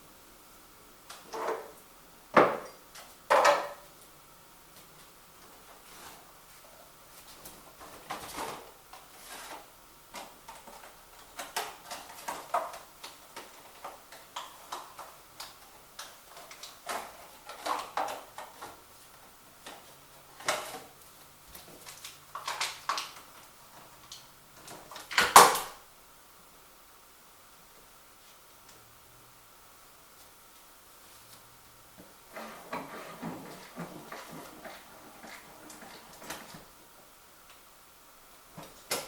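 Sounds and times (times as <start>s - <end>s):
objects knocking and clattering: 1.1s - 3.9s, 7.4s - 18.9s, 19.6s - 25.8s, 32.0s - 36.8s.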